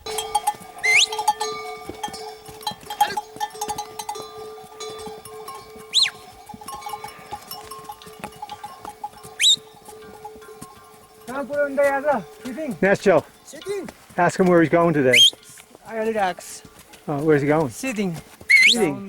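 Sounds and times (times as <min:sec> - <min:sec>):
livestock bells ringing: 0:00.0 - 0:19.0.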